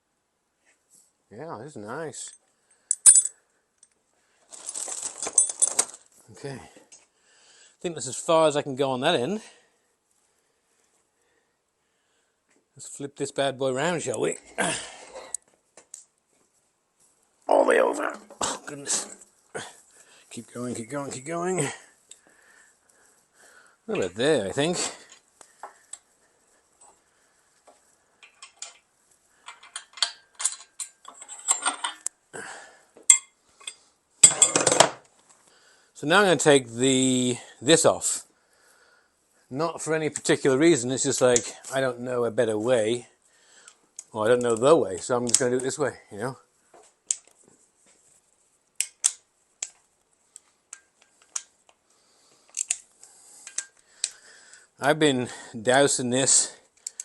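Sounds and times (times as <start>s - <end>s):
metal tools and parts clinking: 2.2s - 6.1s, 28.2s - 32.1s, 33.1s - 35.0s, 52.5s - 52.8s, 53.4s - 53.8s
hand tools clicking on metal: 29.4s - 32.2s, 52.5s - 54.2s, 56.7s - 57.0s.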